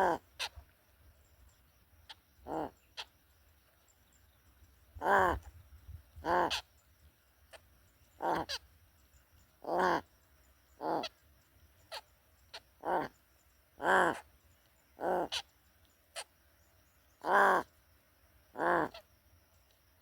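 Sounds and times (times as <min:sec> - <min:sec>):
crow cawing: 0:05.0 - 0:05.4, 0:06.2 - 0:06.6, 0:13.8 - 0:14.2, 0:17.2 - 0:17.7, 0:18.6 - 0:19.0
faint sharp ticks: 0:14.5 - 0:14.8, 0:15.7 - 0:16.0, 0:19.5 - 0:19.9.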